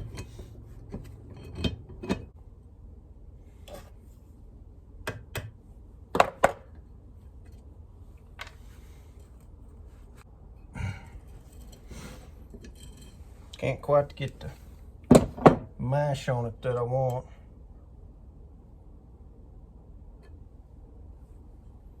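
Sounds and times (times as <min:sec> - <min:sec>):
metal clinks and knocks: 0:00.0 - 0:02.3, 0:12.5 - 0:13.3.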